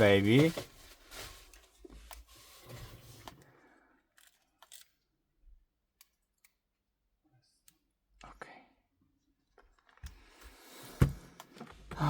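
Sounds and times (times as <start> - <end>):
handling rustle: 0.0 - 3.4.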